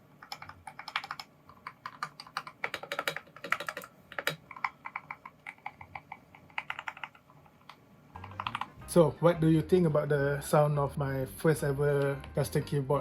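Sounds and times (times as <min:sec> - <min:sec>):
mechanical keyboard typing: 0:00.2 - 0:08.8.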